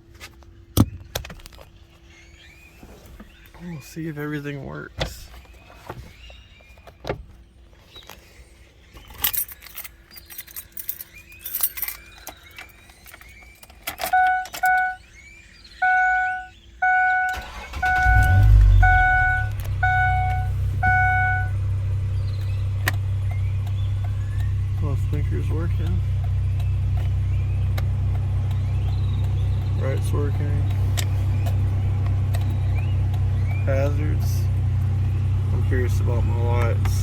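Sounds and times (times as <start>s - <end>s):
keys jangling in ignition: 9.0s - 15.0s
car engine cranking and starting: 9.3s - 37.0s
dashboard warning chime beeping: 14.0s - 21.7s
car engine idling: 14.1s - 37.0s.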